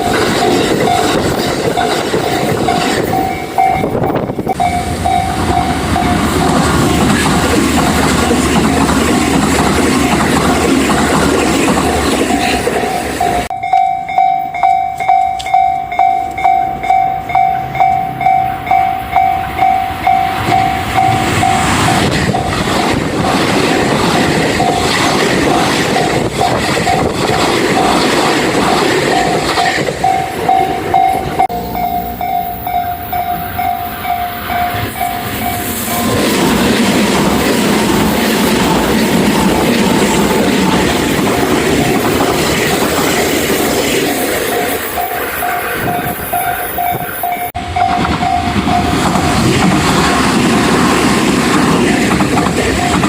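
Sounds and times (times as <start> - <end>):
train wheels clattering: 0.0 - 18.0, 19.2 - 32.0, 32.8 - 53.0
train rumbling: 0.0 - 53.0
level crossing bell ringing: 1.8 - 6.6, 12.4 - 21.8, 29.1 - 36.2.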